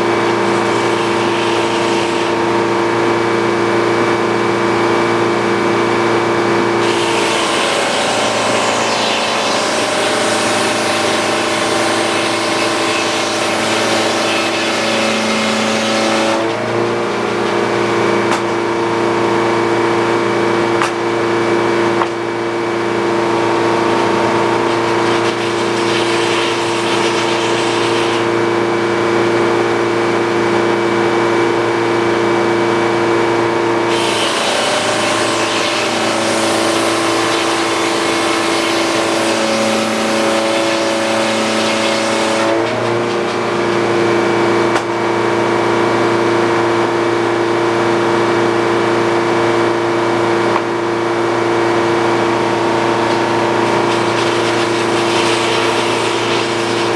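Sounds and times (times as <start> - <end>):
saw blade cutting wood: 0.0 - 3.0, 6.8 - 18.9, 20.7 - 21.1, 21.9 - 28.5, 33.8 - 45.0, 51.7 - 56.9
sawmill engine running: 0.0 - 56.9.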